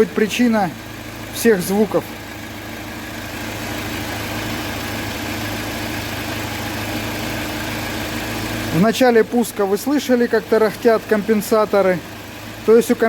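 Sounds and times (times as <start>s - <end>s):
man talking: 0.0s - 0.8s, 1.4s - 2.2s, 8.7s - 12.1s, 12.7s - 13.0s
engine idling: 0.0s - 13.0s.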